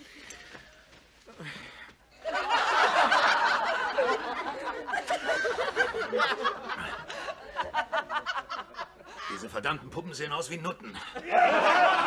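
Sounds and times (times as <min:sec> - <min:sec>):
studio audience laughing: 0:02.2 - 0:09.5, 0:11.1 - 0:12.0.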